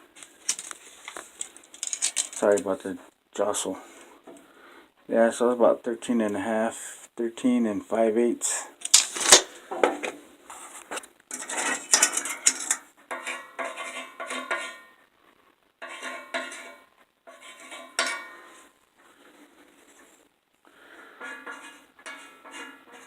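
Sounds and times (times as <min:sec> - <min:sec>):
steel pieces clinking and clattering: 0:00.2 - 0:02.7, 0:08.8 - 0:09.5, 0:11.3 - 0:12.8.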